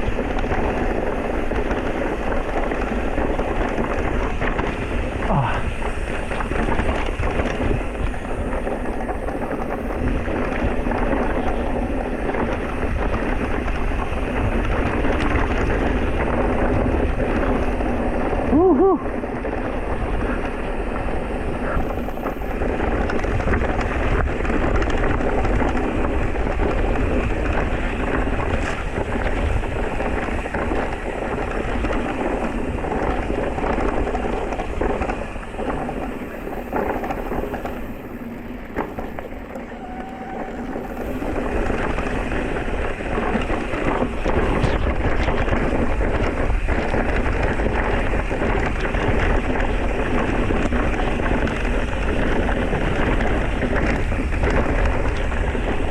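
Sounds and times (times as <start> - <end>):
bike rattling and clicking: 0.0 - 55.9
wind buffeting microphone: 0.0 - 55.9
tyres crunching on trail: 19.4 - 55.9.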